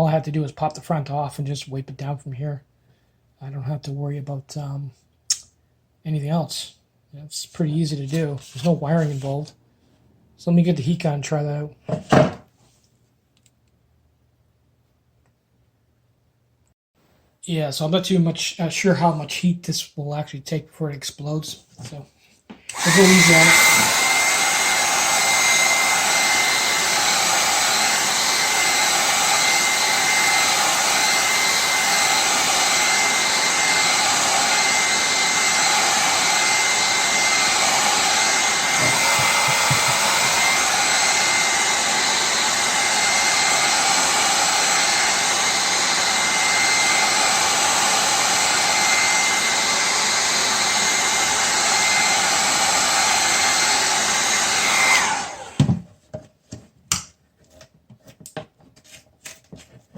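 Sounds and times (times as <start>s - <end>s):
heat gun blowing air: 22.7s - 55.7s.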